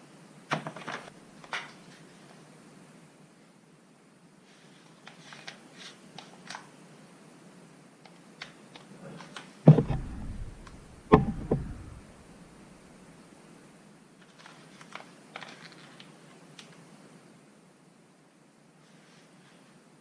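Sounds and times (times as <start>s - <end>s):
light clicks and rattles: 9.3s - 12.2s
small knock: 9.7s - 12.2s
loud deep thumps: 9.7s - 12.8s.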